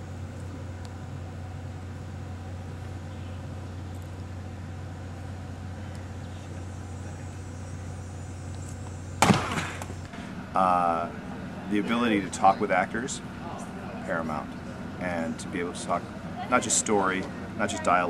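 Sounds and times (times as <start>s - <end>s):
low hum and rumble: 0.0s - 18.0s
loud thump: 9.2s - 10.3s.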